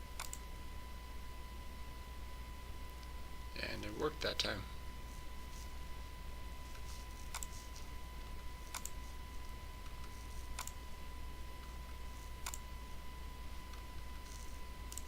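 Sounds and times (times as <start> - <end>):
low electrical hum: 0.0 - 15.0
thin high whine: 0.0 - 15.0
computer mouse clicking: 0.2 - 0.4, 6.7 - 7.9, 8.6 - 10.8, 11.6 - 12.7, 13.7 - 15.0.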